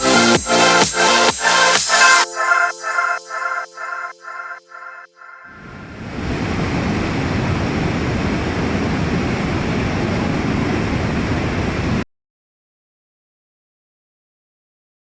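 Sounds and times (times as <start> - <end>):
steady rushing noise: 5.5 - 12.0.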